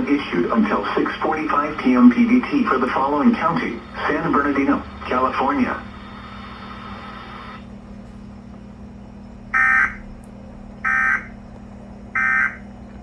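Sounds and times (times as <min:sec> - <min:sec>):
digital data tone bursts: 0:09.6 - 0:10.0, 0:10.8 - 0:11.4, 0:12.2 - 0:12.6.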